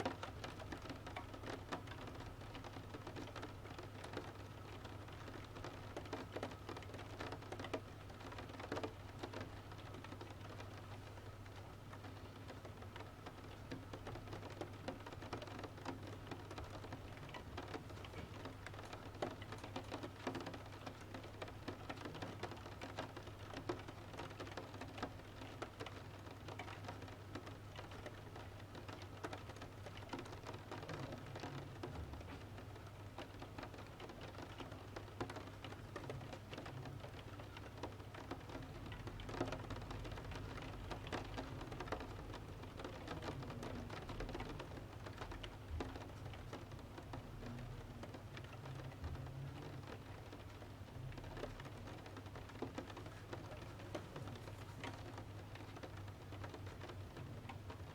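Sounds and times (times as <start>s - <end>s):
rain on a window: 0.0s - 57.9s.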